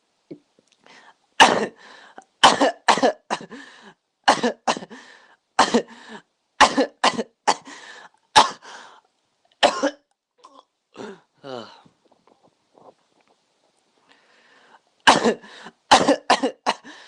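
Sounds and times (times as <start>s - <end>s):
person coughing: 1.4s - 1.8s, 2.4s - 3.6s, 4.3s - 5.0s, 5.6s - 5.9s, 6.6s - 7.7s, 8.4s - 8.6s, 9.6s - 10.0s, 15.1s - 16.9s
breathy sounds: 7.6s - 9.1s, 10.4s - 13.4s, 14.0s - 15.9s.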